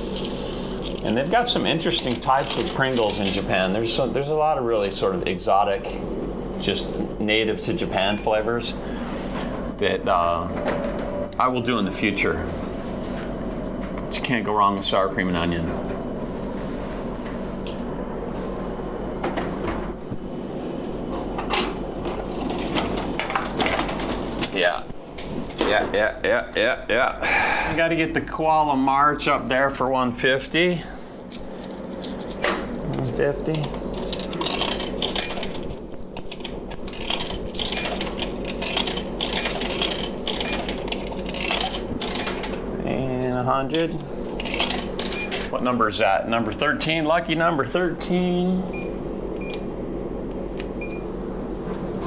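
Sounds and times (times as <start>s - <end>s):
coins clinking into coin slot: 0.0s - 3.6s, 29.5s - 43.8s
vending machine hum: 0.0s - 52.0s.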